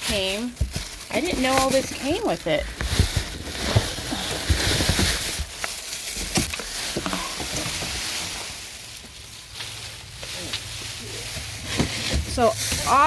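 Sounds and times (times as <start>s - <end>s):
packaging rustling and crinkling: 0.0s - 13.0s.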